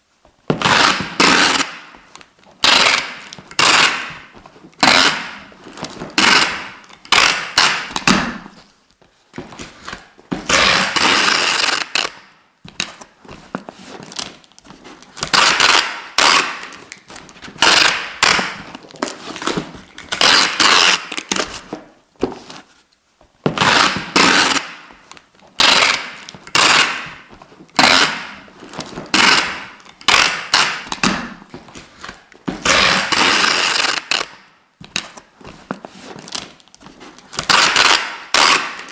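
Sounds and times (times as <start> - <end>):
adhesive tape pulled off roll: 0.6 - 1.9, 10.0 - 12.3, 15.2 - 17.0, 20.1 - 21.4, 23.6 - 24.9, 25.6 - 27.0, 32.1 - 34.4, 37.4 - 38.9.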